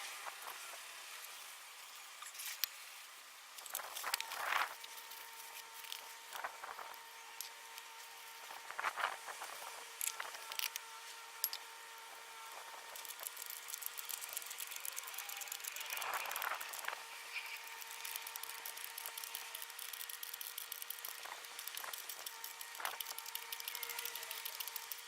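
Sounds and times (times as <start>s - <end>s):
hand tools and parts clinking: 12.9s - 25.0s.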